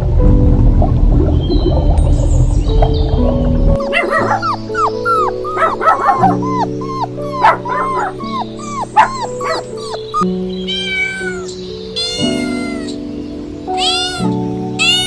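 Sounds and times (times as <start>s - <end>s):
background music with held notes: 0.0s - 15.0s
dog yipping: 3.8s - 13.0s.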